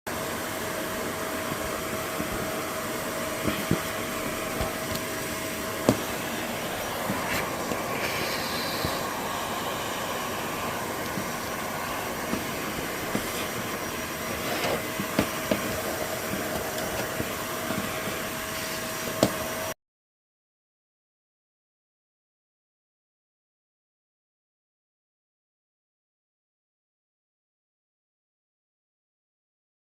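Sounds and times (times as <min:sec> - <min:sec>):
vacuum cleaner running: 0:00.1 - 0:19.8.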